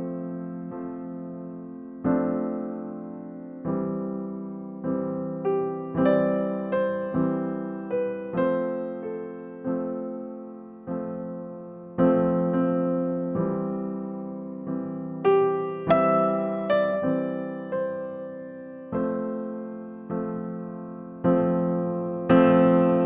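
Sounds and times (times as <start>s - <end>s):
slow gentle piano melody: 0.0s - 23.0s.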